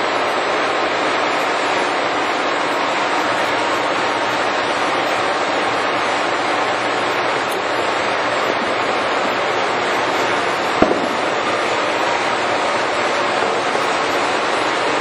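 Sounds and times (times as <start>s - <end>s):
boring mill running: 0.0s - 15.0s
sharp knock: 10.8s - 11.2s.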